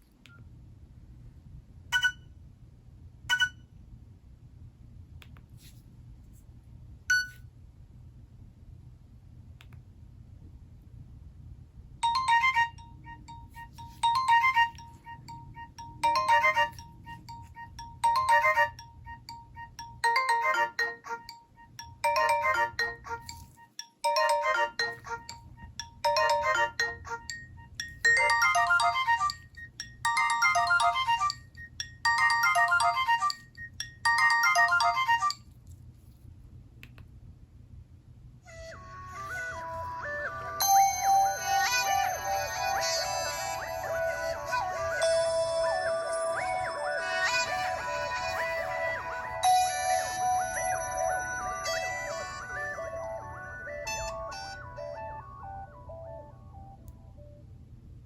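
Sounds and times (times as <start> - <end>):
click: 0.0 - 0.4, 5.2 - 5.5, 9.6 - 9.8, 36.8 - 37.1
electronic phone ringtone: 2.0 - 2.2, 12.0 - 35.4, 39.2 - 57.3.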